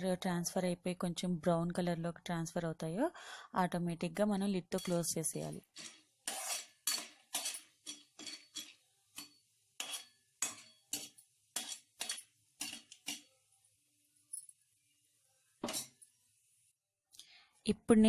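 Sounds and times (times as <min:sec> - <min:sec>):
spoon scraping a metal pan: 0:04.8 - 0:13.3, 0:15.6 - 0:16.0.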